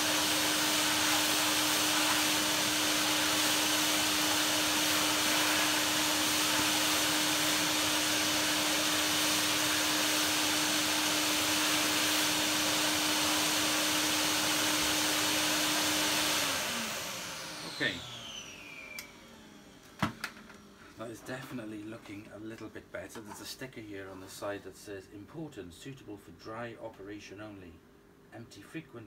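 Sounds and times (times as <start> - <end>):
vacuum cleaner motor humming: 0.0 - 20.9.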